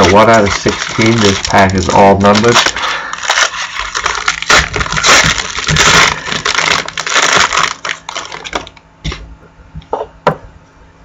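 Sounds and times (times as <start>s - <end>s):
card pack wrapper crinkling: 0.0s - 8.8s
cards being handled: 0.0s - 8.8s.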